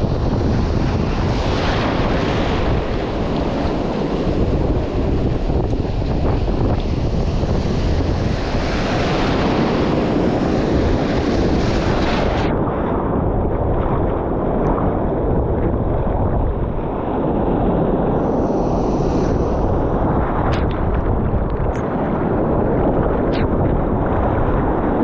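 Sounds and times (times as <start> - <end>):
ocean surf breaking: 0.0 - 12.6, 16.7 - 25.0
wind buffeting microphone: 0.0 - 25.0.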